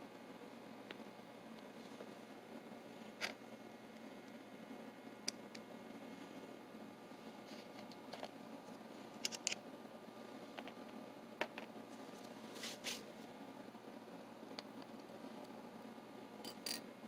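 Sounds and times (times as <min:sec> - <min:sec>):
small metal parts clicking: 0:16.4 - 0:16.8.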